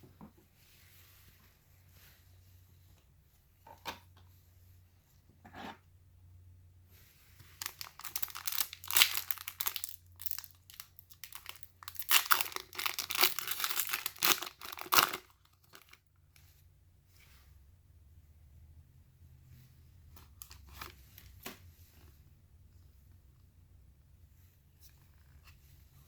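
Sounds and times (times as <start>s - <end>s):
plastic wrapper tearing and crinkling: 7.6s - 16.0s.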